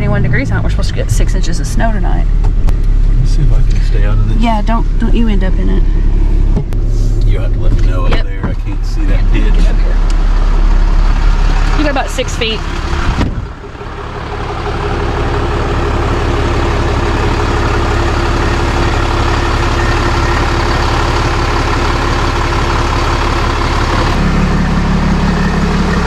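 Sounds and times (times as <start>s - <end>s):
tow truck engine running: 0.0s - 26.0s.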